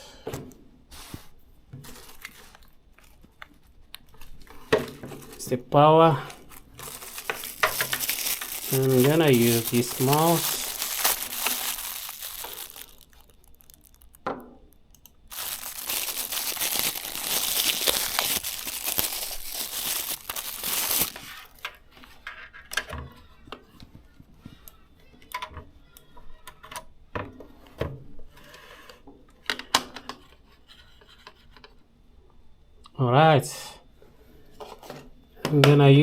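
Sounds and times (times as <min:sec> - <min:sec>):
plastic wrapping crinkling and tearing: 0:06.4 - 0:14.3, 0:15.3 - 0:21.8.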